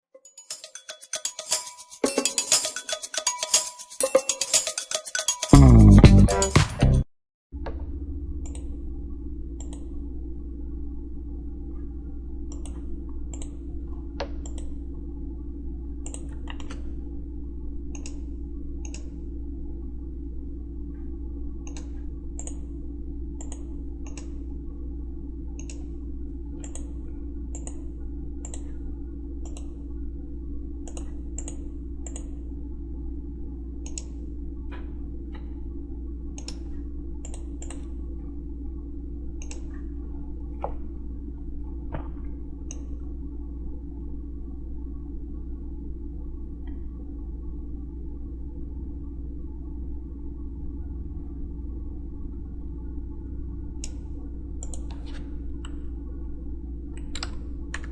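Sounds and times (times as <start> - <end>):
steady low hum: 7.6 - 57.9
computer mouse clicking: 12.5 - 13.6, 14.2 - 14.8, 16.0 - 16.8, 21.6 - 22.6, 23.4 - 24.4, 25.6 - 25.9, 26.6 - 26.9, 27.5 - 27.8, 28.4 - 28.8, 29.4 - 29.8, 30.8 - 32.4, 33.8 - 34.2, 36.4 - 37.9, 39.4 - 39.8, 54.6 - 55.8.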